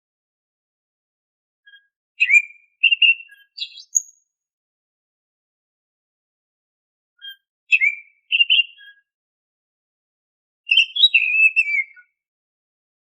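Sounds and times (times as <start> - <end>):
bird whistling song: 1.7 - 4.3, 7.2 - 9.1, 10.7 - 12.2.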